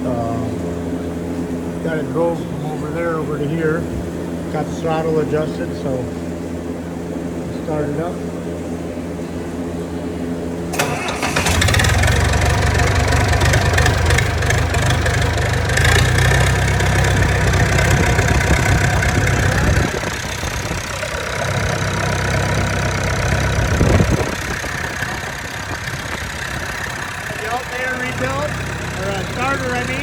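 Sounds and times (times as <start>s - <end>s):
diesel tractor engine running: 8.0s - 30.0s.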